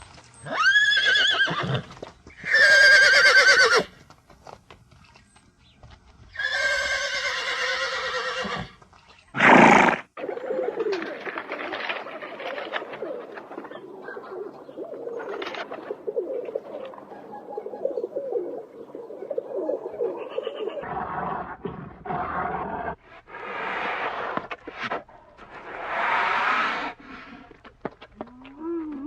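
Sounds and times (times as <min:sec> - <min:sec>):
overlapping low animal calls: 0:09.4 - 0:21.1.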